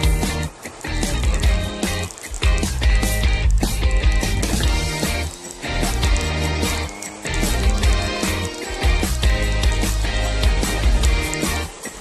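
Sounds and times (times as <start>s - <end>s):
music with heavy bass: 0.0s - 12.0s.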